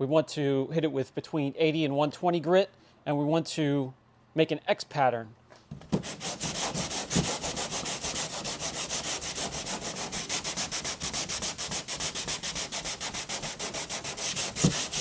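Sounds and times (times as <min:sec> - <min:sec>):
sandpaper rasping on filler: 0:05.9 - 0:15.0.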